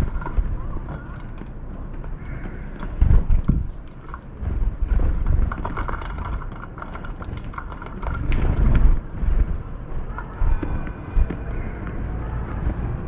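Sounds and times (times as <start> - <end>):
wind gusting across microphone: 0.0 - 13.0.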